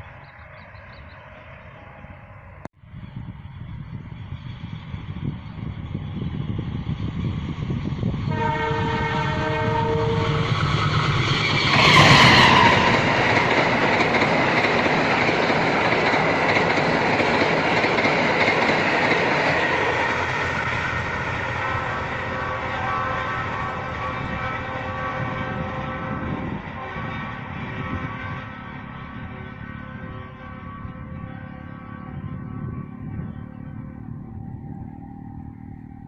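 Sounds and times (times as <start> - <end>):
train passing with rumble: 0.0 - 36.0
wheels rumbling on rails: 0.0 - 36.0
train horn: 8.2 - 13.8, 19.7 - 35.2.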